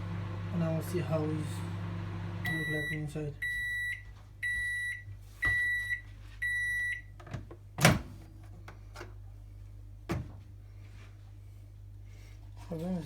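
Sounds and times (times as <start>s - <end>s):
microwave beeps: 2.3s - 7.2s.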